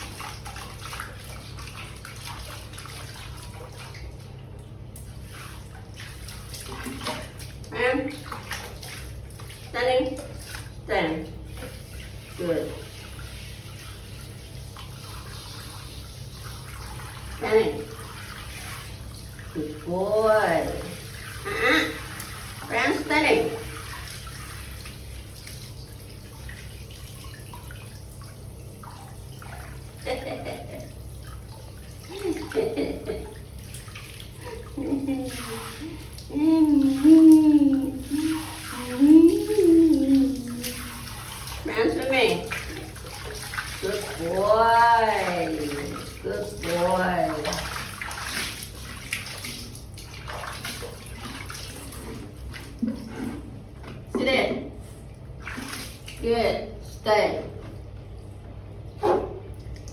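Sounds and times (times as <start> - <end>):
water splashing in a tub: 0.0 - 59.9.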